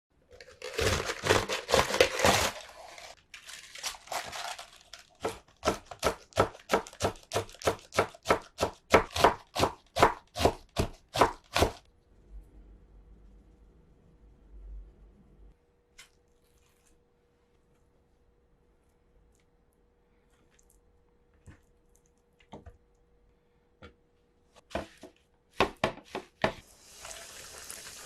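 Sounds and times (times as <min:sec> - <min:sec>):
crisp crunching and crackling: 0:00.3 - 0:05.7
knife chopping on cutting board: 0:05.2 - 0:11.8, 0:24.7 - 0:26.6.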